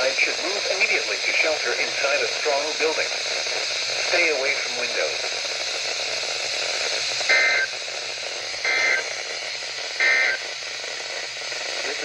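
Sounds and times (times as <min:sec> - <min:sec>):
radio hiss: 0:00.0 - 0:12.0
digital data tone bursts: 0:07.2 - 0:07.8, 0:08.5 - 0:09.3, 0:09.9 - 0:10.6.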